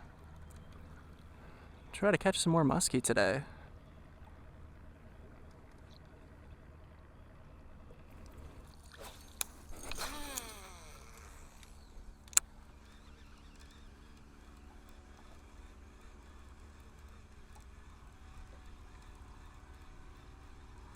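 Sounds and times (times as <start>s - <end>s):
whirring falling in pitch: 9.8s - 12.4s.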